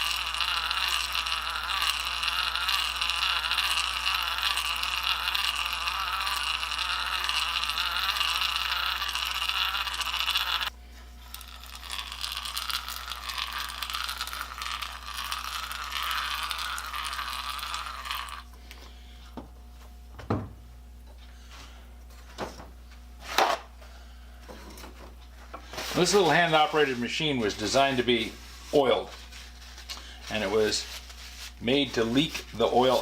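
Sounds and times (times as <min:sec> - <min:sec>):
hand-crank grinder whirring: 0:00.0 - 0:18.9, 0:25.8 - 0:28.8, 0:32.0 - 0:33.0.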